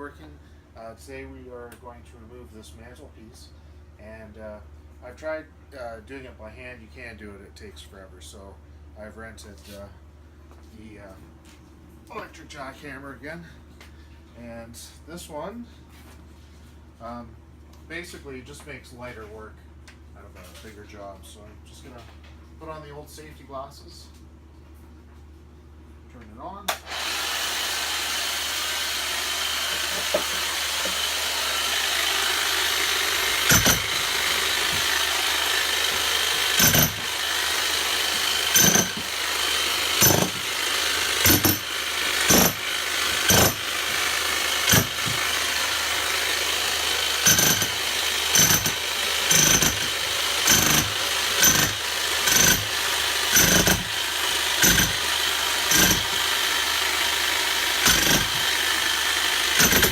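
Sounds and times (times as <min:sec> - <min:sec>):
demolition hammer chiselling brick: 0:28.9 - 0:59.9.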